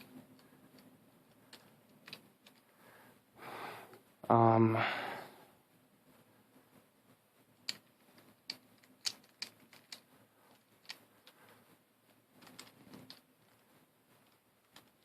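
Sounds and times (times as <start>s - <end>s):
plastic puzzle pieces clicking: 0.0s - 2.7s, 7.6s - 11.4s, 12.3s - 13.6s, 14.2s - 15.0s.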